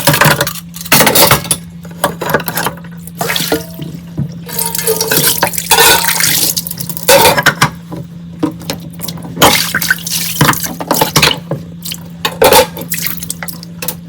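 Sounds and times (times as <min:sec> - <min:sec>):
dishes clinking: 0:04.5 - 0:06.2, 0:12.3 - 0:12.9
tap water splashing over dishes: 0:08.4 - 0:13.7.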